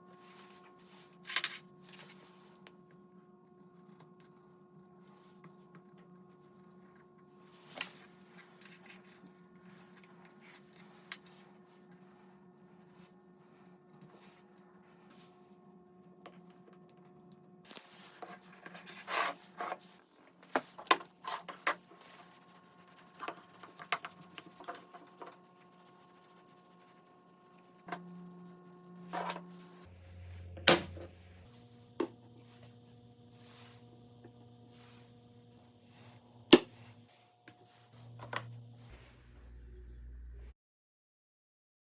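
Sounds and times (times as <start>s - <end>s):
steady low hum: 21.7s - 40.5s.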